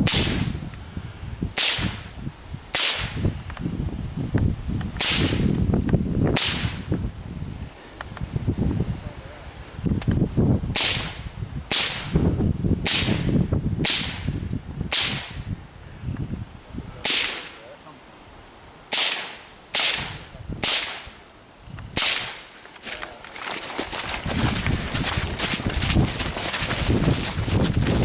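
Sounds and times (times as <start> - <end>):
rifle shots cracking: 17.0 - 17.6, 18.9 - 21.2, 22.0 - 22.4.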